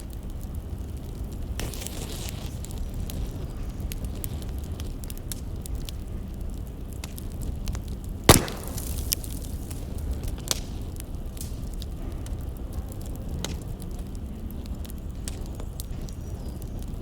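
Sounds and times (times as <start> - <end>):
firewood crackling: 0.0 - 17.0
loud sharp pop: 8.3 - 9.4.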